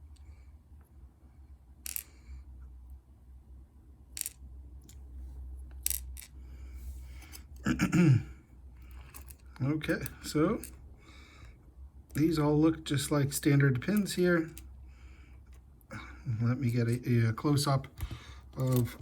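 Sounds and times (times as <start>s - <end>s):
pins clicking onto hard surface: 1.9s - 2.2s, 4.2s - 5.0s, 5.7s - 6.4s.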